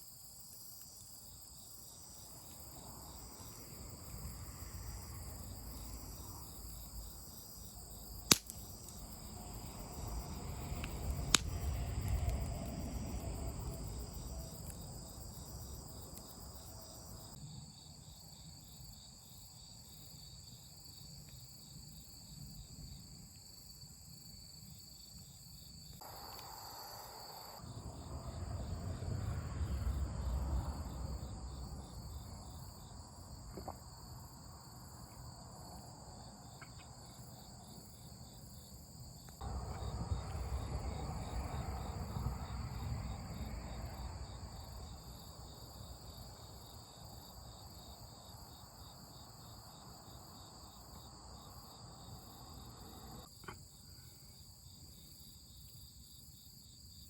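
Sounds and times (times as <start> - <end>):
insects chirring: 0.0 - 57.0
sharp pops: 8.2 - 9.1, 10.8 - 11.8
low rumble: 27.6 - 32.7, 39.4 - 44.9.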